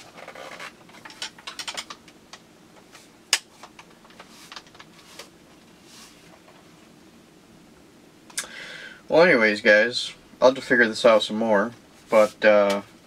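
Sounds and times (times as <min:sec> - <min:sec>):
soft rustle: 0:02.8 - 0:07.0, 0:11.9 - 0:12.6.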